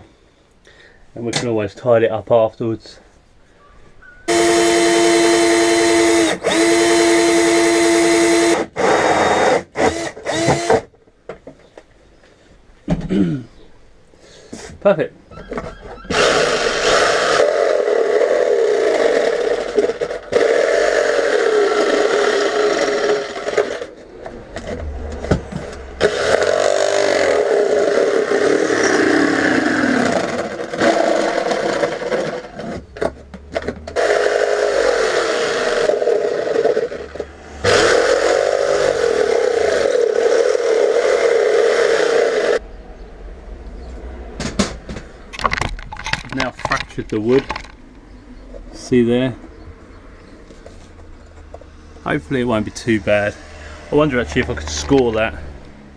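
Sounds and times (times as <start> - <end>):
jigsaw cutting wood: 4.3 - 10.9, 16.1 - 23.9, 26.0 - 32.8, 33.9 - 42.6.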